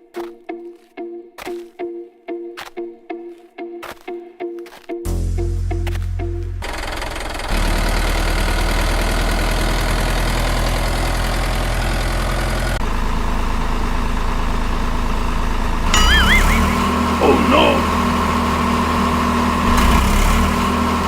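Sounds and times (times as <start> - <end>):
engine idling: 6.6 - 15.9
short high chirps: 15.9 - 17.9.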